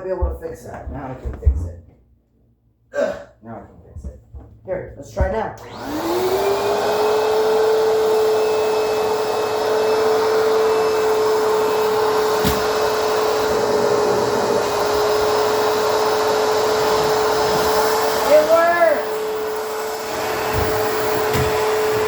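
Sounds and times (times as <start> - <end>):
vacuum cleaner motor whine: 5.6 - 22.0.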